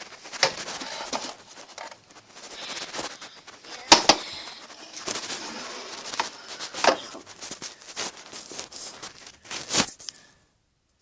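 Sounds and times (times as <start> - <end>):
rustling of toys moved: 0.0 - 10.4.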